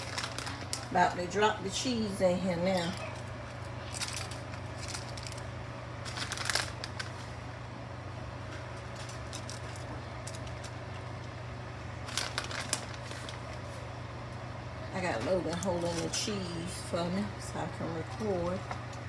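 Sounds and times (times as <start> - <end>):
rustling and clicking handling noises: 0.0 - 1.0, 2.7 - 7.4, 8.5 - 11.4, 12.0 - 13.9, 15.1 - 16.4, 18.0 - 19.0
steady low hum: 0.0 - 19.0.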